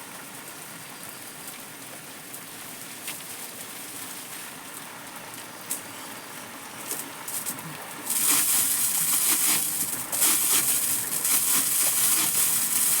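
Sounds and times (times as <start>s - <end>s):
water gushing from a pipe: 6.9s - 13.0s.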